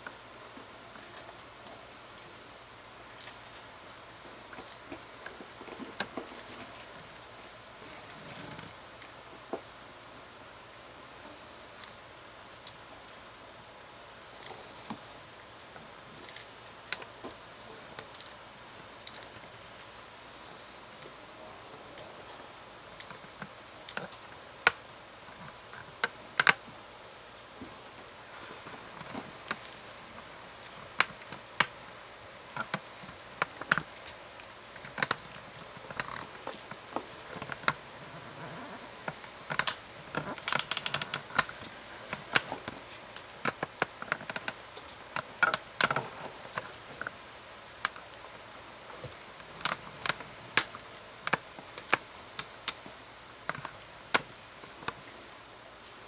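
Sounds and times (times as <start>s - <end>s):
tortoises biting and crunching food: 27.7s - 56.0s.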